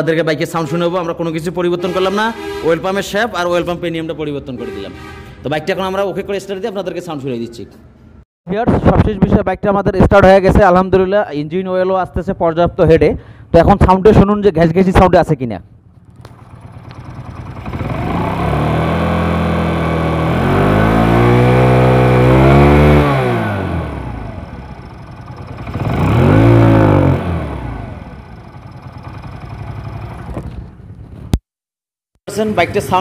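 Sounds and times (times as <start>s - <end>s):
motorcycle engine idling and revving: 15.9s - 31.4s.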